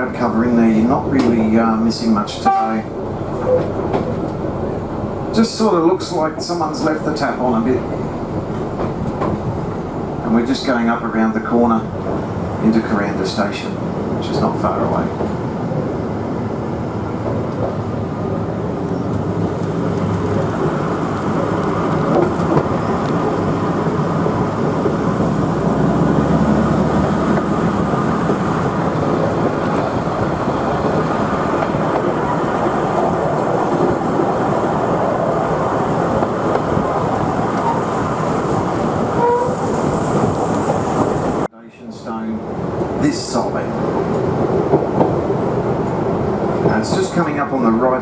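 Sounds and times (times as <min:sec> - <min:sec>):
train rumbling on rails: 0:00.0 - 0:48.0
wheels clickety-clack: 0:03.3 - 0:04.4, 0:07.9 - 0:09.6, 0:18.9 - 0:41.5, 0:44.0 - 0:47.3.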